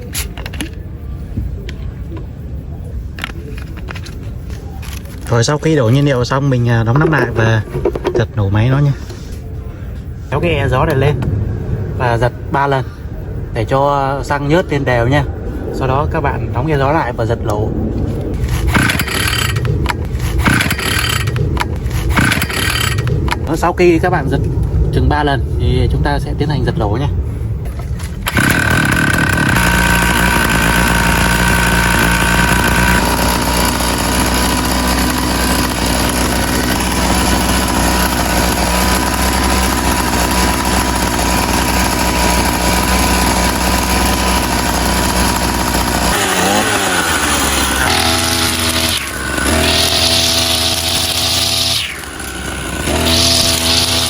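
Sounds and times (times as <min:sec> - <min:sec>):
brush cutter engine revving: 0:18.3 - 0:23.5, 0:28.0 - 0:54.0.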